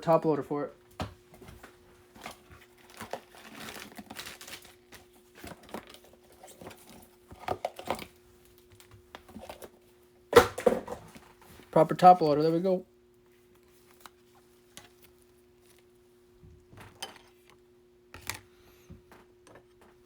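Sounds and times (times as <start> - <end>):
plastic sleeves crinkling: 2.1 - 8.7.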